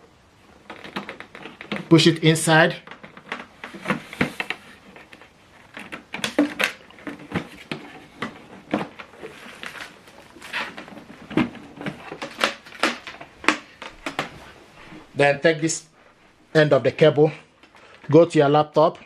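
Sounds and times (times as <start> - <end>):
plastic clicks and scrapes: 0.4 - 15.1.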